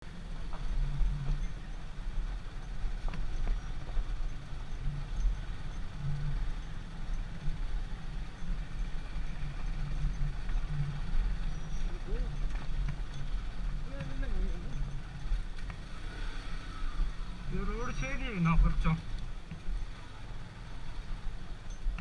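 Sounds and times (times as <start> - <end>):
motorcycle engine rumbling: 0.0 - 22.0.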